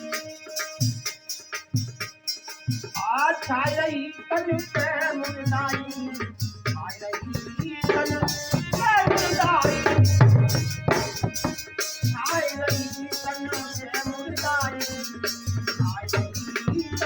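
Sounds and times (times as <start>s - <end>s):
sliding melodic instrument: 0.0s - 2.4s
fast drum percussion: 0.0s - 3.8s, 4.5s - 17.0s.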